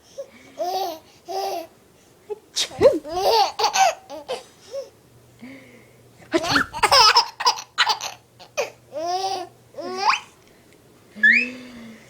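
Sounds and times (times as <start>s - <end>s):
small child laughing: 2.3s - 4.4s, 6.3s - 10.3s.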